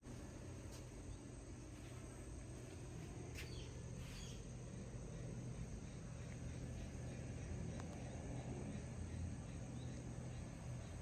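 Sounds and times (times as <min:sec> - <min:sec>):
high insect drone: 0:00.1 - 0:11.0
bird chirps: 0:03.4 - 0:04.5.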